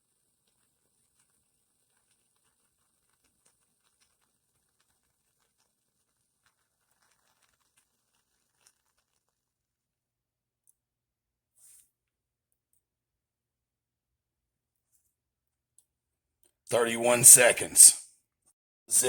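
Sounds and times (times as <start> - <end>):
burning match crackling: 0.3 - 9.5.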